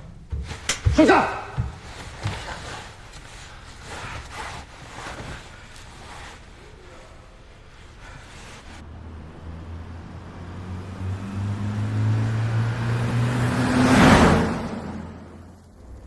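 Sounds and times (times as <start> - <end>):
vehicle passing by: 8.8 - 16.0.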